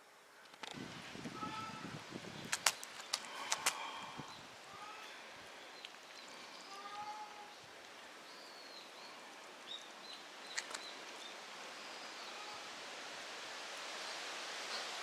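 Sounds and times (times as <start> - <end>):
outdoor background hiss: 0.0 - 15.0
small birds chirping: 1.3 - 12.6
sharp clicks: 2.5 - 3.9, 10.6 - 10.9.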